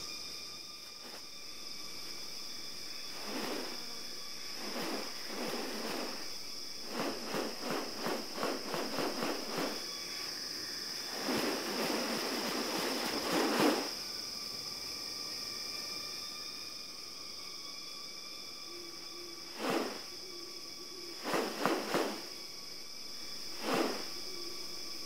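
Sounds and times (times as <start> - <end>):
insects droning: 0.0 - 25.0.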